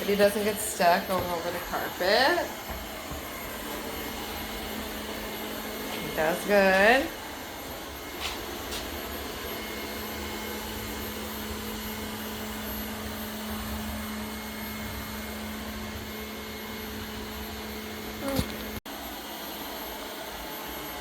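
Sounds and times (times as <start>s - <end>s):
robot vacuum humming: 0.0s - 13.1s.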